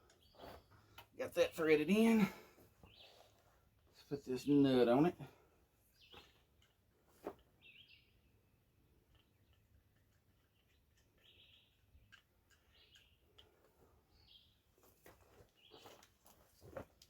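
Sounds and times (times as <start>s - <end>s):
faint bird chirps: 7.6s - 8.5s.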